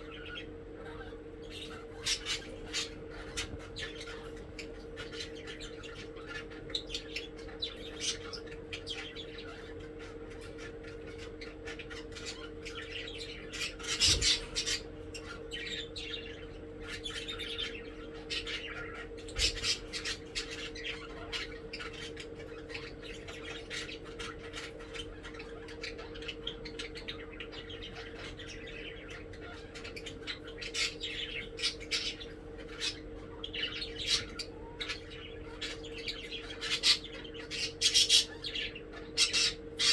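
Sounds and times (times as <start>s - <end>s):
budgies chirping and squawking: 0.0s - 39.9s
steady low hum: 0.0s - 39.9s.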